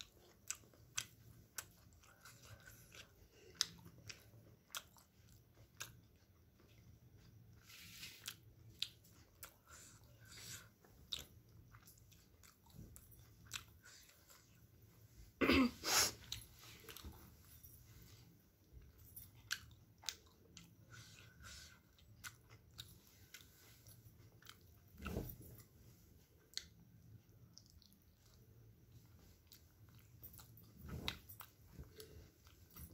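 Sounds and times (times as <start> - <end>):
wet chewing mouth sounds: 19.4 - 24.9, 27.4 - 32.8.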